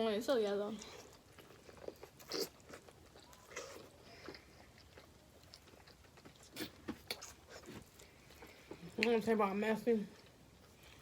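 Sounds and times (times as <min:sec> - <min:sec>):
person chewing food: 0:00.7 - 0:09.1, 0:10.2 - 0:11.0
food crunching: 0:00.7 - 0:09.2.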